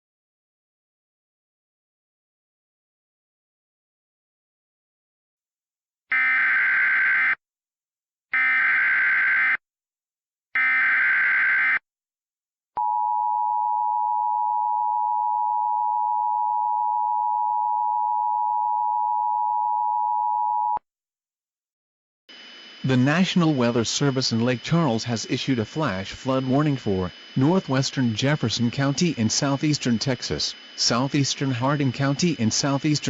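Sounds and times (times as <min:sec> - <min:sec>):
digital data bursts: 0:22.3 - 0:33.0.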